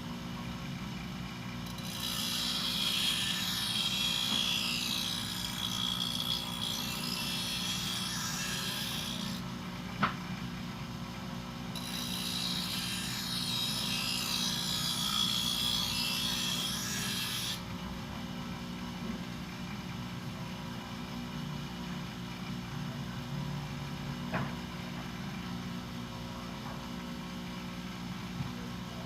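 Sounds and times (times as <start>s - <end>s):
bench grinder running: 1.6s - 9.4s, 11.7s - 17.6s
blade grinding on wheel: 1.6s - 9.4s, 11.8s - 17.6s.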